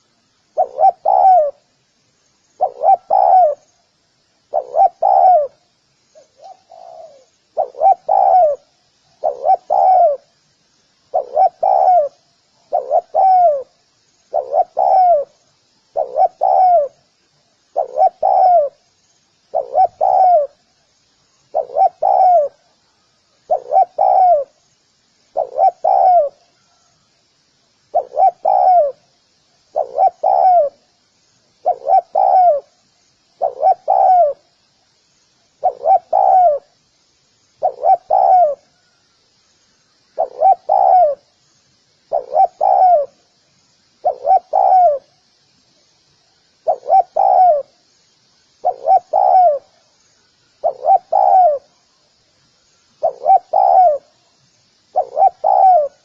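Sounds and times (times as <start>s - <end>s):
faint high chirps: 0.0s - 56.0s
dove cooing: 0.6s - 1.7s, 2.6s - 3.7s, 4.5s - 5.6s, 6.2s - 10.3s, 11.1s - 17.0s, 17.8s - 18.8s, 19.5s - 20.6s, 21.5s - 22.8s, 23.4s - 24.6s, 25.3s - 26.9s, 27.9s - 29.1s, 29.7s - 30.8s, 31.6s - 32.8s, 33.4s - 34.5s, 35.6s - 36.8s, 37.6s - 38.8s, 40.2s - 41.3s, 42.1s - 43.2s, 44.0s - 45.1s, 46.6s - 47.8s, 48.6s - 49.8s, 50.6s - 51.8s, 53.0s - 54.2s, 54.9s - 56.0s.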